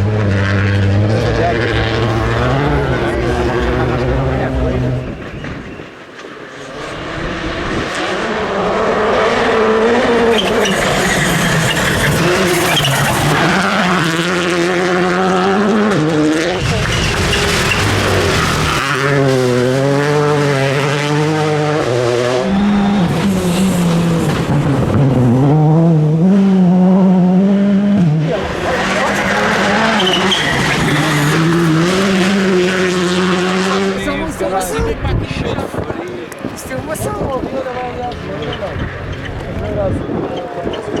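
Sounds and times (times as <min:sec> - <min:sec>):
rally car engine revving: 0:00.0 - 0:05.8, 0:06.6 - 0:41.0
tyres on gravel: 0:28.3 - 0:32.7.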